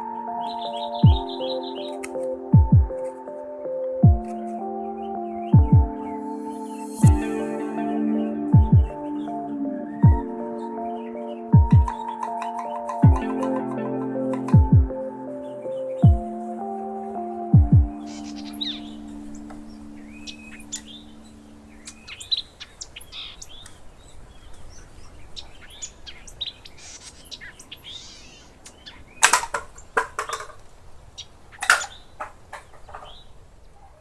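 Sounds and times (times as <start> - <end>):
small birds chirping: 0.2 - 3.5, 17.9 - 34.0.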